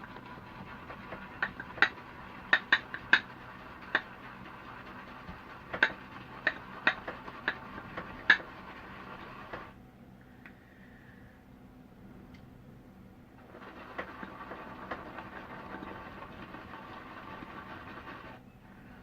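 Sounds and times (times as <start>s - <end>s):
brush swishing shaving cream: 0.0s - 9.8s, 13.4s - 18.4s.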